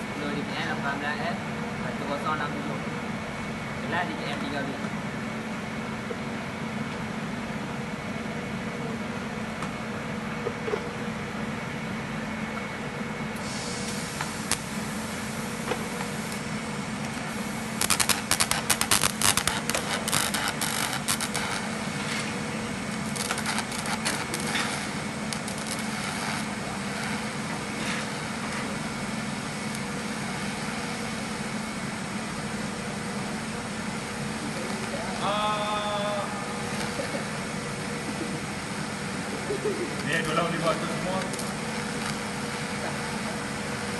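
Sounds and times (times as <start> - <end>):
electrical hum: 0.0 - 43.9
welding hiss: 13.4 - 31.8, 32.5 - 39.4
welding crackling: 13.8 - 31.6, 36.6 - 37.6, 40.0 - 43.6.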